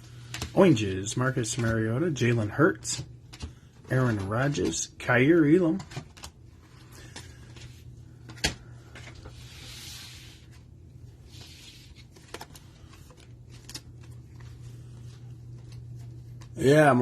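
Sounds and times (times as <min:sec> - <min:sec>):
low steady hum: 0:00.0 - 0:17.0
packaging rustling: 0:11.3 - 0:14.6.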